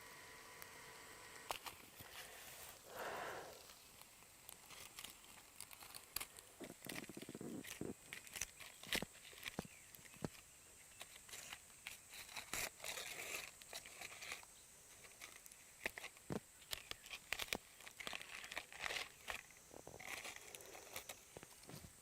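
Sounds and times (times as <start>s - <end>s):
soft tearing and crinkling: 1.4s - 22.0s.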